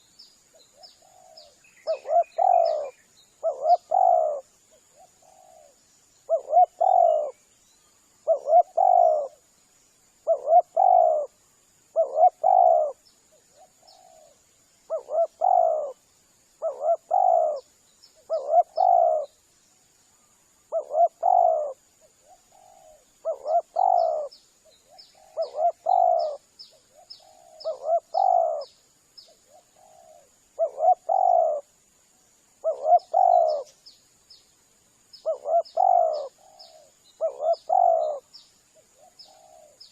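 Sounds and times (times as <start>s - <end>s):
faint small bird chirps: 0.0s - 39.9s
dove cooing: 0.8s - 7.4s, 8.2s - 9.4s, 10.2s - 11.3s, 11.9s - 16.0s, 16.6s - 19.3s, 20.7s - 28.7s, 29.4s - 31.7s, 32.6s - 33.8s, 35.2s - 39.9s.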